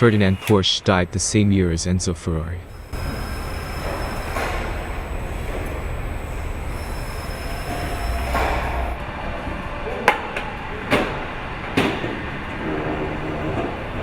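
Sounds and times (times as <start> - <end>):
faint high whine: 0.0 - 9.0
factory machinery din: 0.0 - 9.2.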